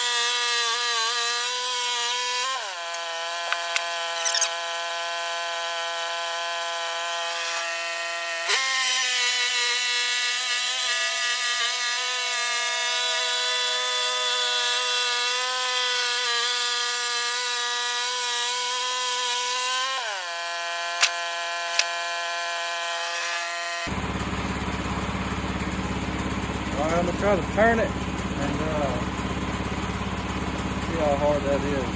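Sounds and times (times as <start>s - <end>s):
sawmill cutting a log: 0.0s - 31.9s
sharp clicks: 21.0s - 22.0s
low engine rumble: 23.9s - 31.9s.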